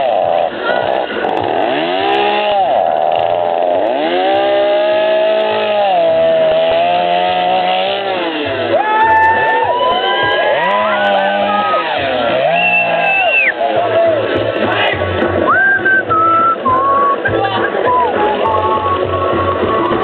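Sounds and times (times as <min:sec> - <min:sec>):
small engine revving: 0:00.0 - 0:20.0.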